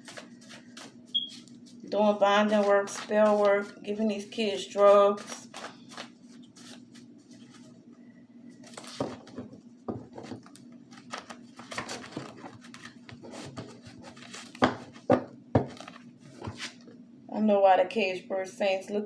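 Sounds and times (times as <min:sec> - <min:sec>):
cards rustling: 0:00.0 - 0:07.8, 0:08.6 - 0:09.4, 0:10.2 - 0:16.8.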